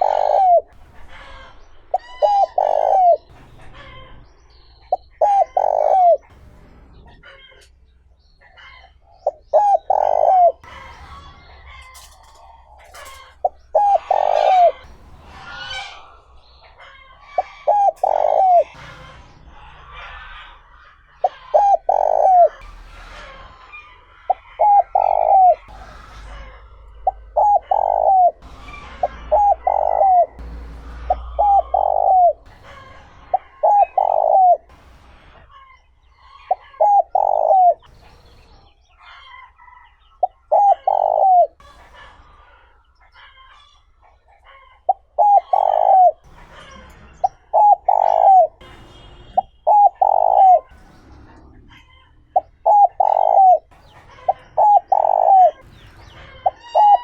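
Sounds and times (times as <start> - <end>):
dove cooing: 0.0 - 4.1, 4.9 - 6.3, 8.6 - 10.9, 11.8 - 18.8, 19.6 - 22.7, 24.3 - 35.7, 36.3 - 38.0, 40.2 - 42.6, 44.5 - 48.6, 49.4 - 50.9, 51.7 - 57.0
small birds chirping: 0.0 - 57.0.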